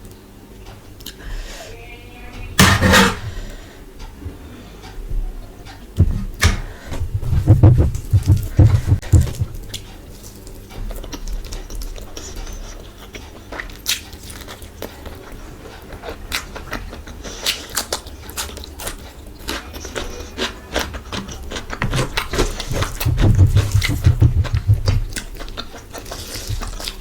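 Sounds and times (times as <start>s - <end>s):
chewing: 7.4s - 27.0s.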